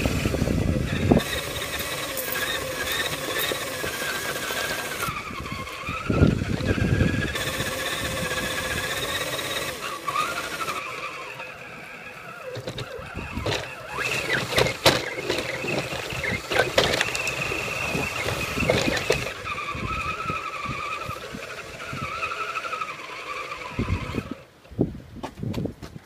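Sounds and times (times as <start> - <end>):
electric motor and gear whine: 0.0 - 24.7
chassis clicks and knocks: 12.5 - 19.4.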